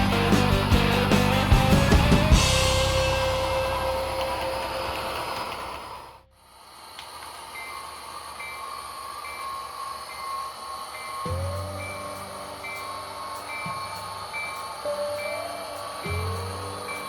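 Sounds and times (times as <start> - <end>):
background music: 0.0 - 5.8, 11.3 - 17.0
model locomotive running hum: 2.3 - 17.0.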